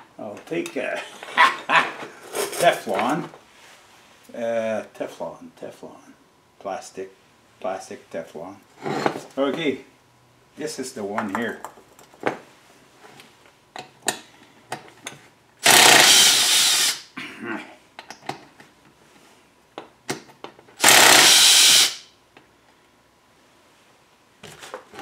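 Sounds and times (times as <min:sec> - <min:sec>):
power tool bursts: 0:15.6 - 0:17.1, 0:20.8 - 0:22.1.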